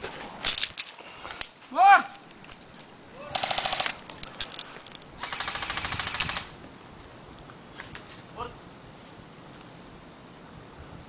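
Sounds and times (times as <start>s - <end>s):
airsoft guns firing full auto: 3.3s - 4.0s, 5.2s - 6.5s.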